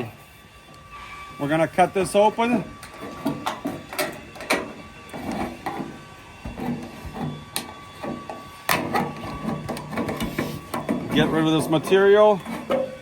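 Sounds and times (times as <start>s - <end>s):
sheet metal scraping: 2.9s - 13.0s.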